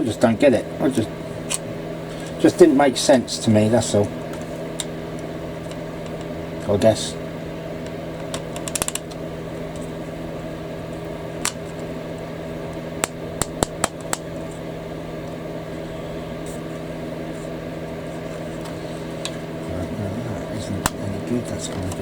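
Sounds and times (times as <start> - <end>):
low electrical hum: 0.0 - 22.0
plastic parts clicking: 8.3 - 9.1.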